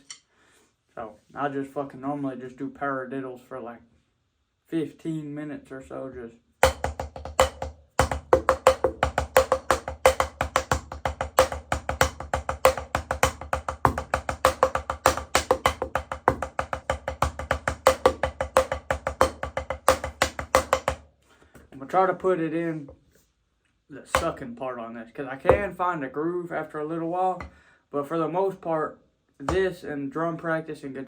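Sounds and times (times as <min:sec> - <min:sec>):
drumsticks playing rudiments: 0:06.6 - 0:21.0.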